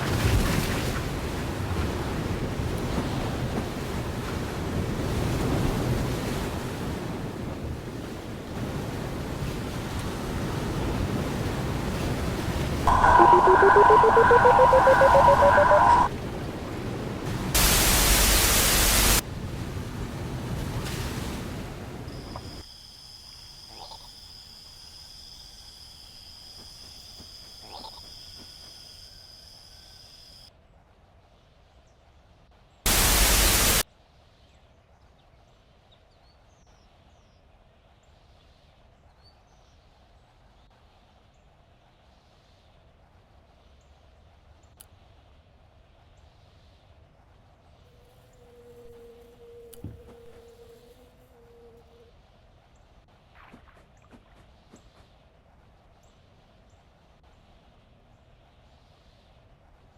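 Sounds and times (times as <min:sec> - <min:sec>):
faint high chirps: 0:12.9 - 0:16.1
harsh distorted drone: 0:12.9 - 0:16.1, 0:32.9 - 0:33.8
loud burst of static: 0:12.9 - 0:16.1, 0:17.6 - 0:19.2, 0:32.9 - 0:33.8
stuttering tone rising in pitch: 0:12.9 - 0:16.1
rushing sound: 0:12.9 - 0:16.2
faint steady hiss: 0:17.6 - 0:19.2, 0:32.9 - 0:33.8.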